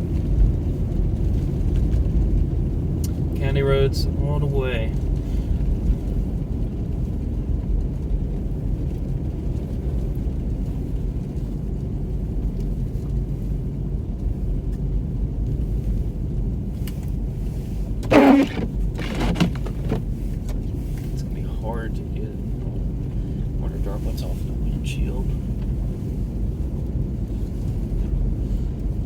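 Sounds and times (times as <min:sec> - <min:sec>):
car cabin low rumble: 0:00.0 - 0:29.0
short pitched sounds: 0:18.0 - 0:20.0.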